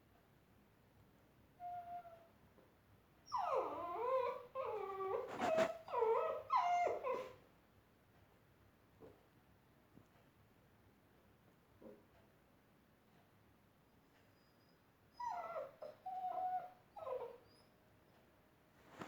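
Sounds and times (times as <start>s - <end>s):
puppy whimpering: 1.6s - 2.3s, 3.2s - 7.4s, 14.4s - 17.8s.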